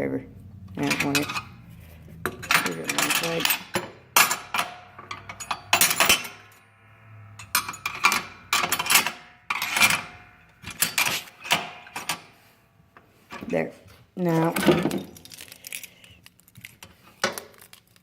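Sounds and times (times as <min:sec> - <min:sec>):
metal tools clinking in tool box: 0:00.8 - 0:06.6, 0:07.3 - 0:12.4, 0:14.2 - 0:17.7.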